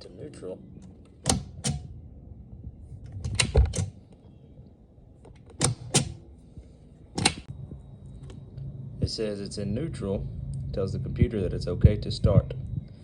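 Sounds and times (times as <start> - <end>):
sharp mechanical clicks: 0.8 - 1.9, 5.3 - 6.2, 7.2 - 7.5.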